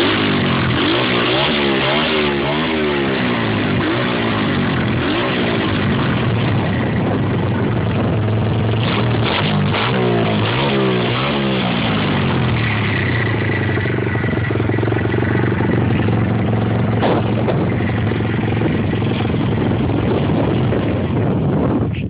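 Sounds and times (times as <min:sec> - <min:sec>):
motorbike engine revving: 0:00.0 - 0:22.0.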